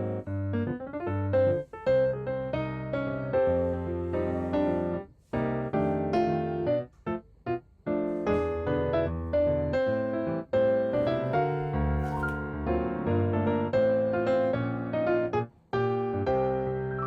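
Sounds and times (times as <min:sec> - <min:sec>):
staccato piano melody: 0:07.9 - 0:17.0.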